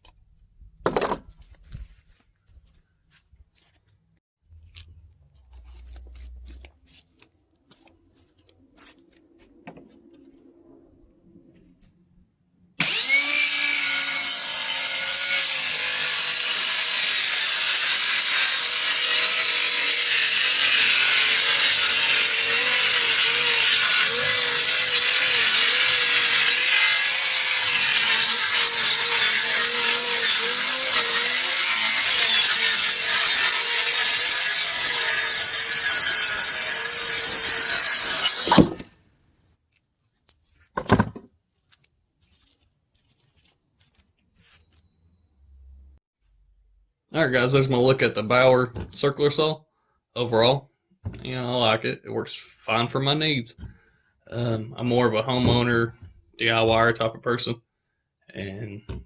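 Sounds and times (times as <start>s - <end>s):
circular saw cutting: 12.8s - 38.9s.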